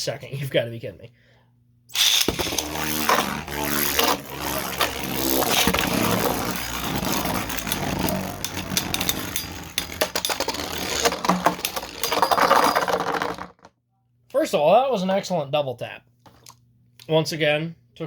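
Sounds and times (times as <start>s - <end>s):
spinning tops whirring and clashing: 1.9s - 13.6s.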